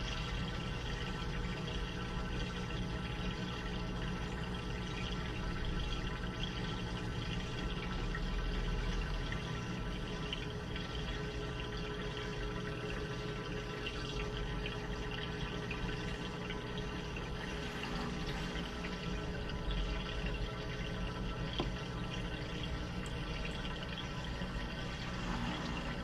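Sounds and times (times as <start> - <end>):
washing machine hum: 0.0 - 26.0
running water rushing: 7.0 - 26.0.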